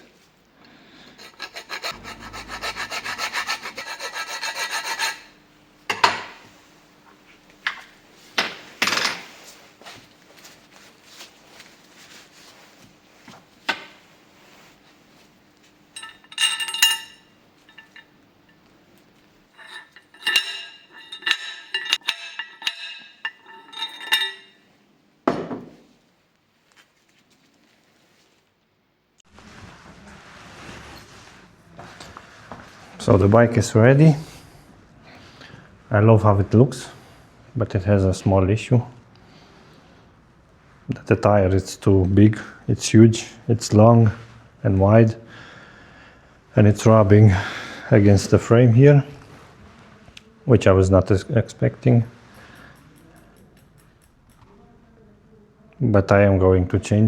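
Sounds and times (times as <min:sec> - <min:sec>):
hand file rasping on metal: 0:01.1 - 0:05.4, 0:16.0 - 0:18.0, 0:19.6 - 0:24.6
thump: 0:25.3 - 0:25.8.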